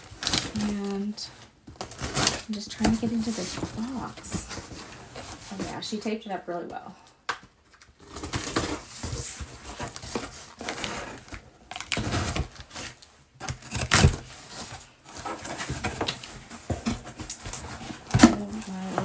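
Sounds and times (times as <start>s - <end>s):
cardboard cracking: 0.0s - 1.1s, 7.8s - 19.0s
packing tape tearing: 0.0s - 1.1s, 8.0s - 19.0s.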